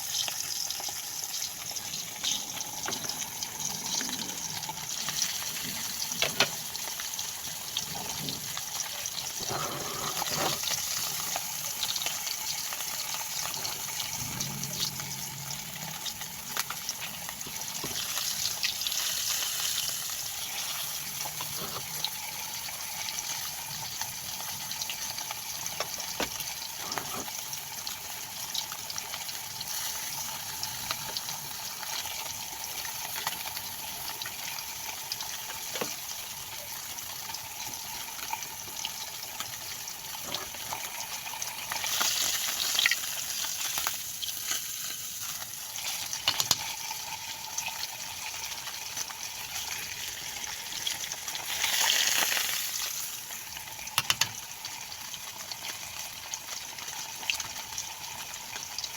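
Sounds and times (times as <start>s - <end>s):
fish frying in hot oil: 0.0s - 58.9s.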